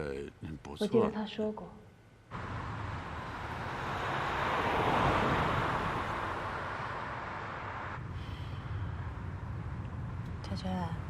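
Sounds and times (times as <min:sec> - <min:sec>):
vehicle passing: 0:02.3 - 0:11.0
low steady hum: 0:05.1 - 0:11.0.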